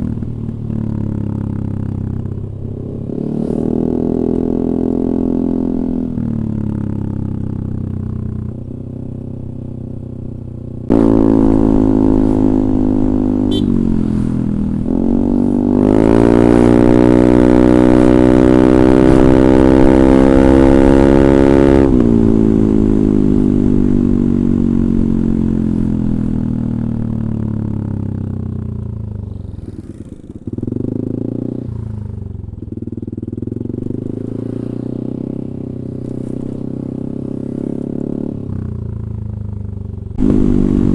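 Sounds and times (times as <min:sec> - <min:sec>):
scooter engine revving: 0:40.2 - 0:40.9.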